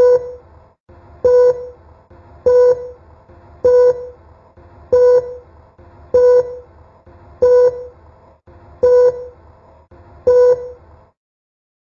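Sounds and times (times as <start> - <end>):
short electronic beeps: 0.0 - 0.5, 1.2 - 1.8, 2.4 - 3.0, 3.6 - 4.2, 4.9 - 5.5, 6.1 - 6.7, 7.4 - 8.0, 8.8 - 9.4, 10.2 - 10.8
faint low hum: 0.0 - 11.2.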